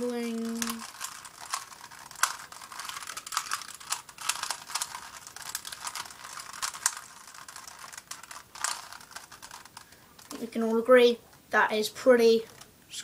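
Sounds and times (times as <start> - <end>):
plastic puzzle cube clicking: 0.2 - 10.4.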